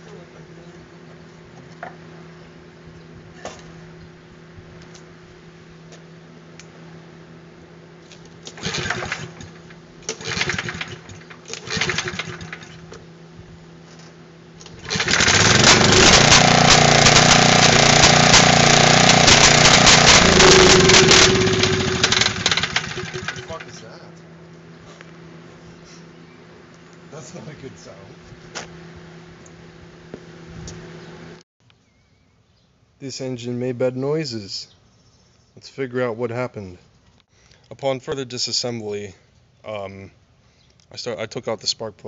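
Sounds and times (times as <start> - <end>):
starter cord pulls: 8.4 - 12.9, 14.6 - 23.8
engine running with metal clanging: 13.9 - 24.0.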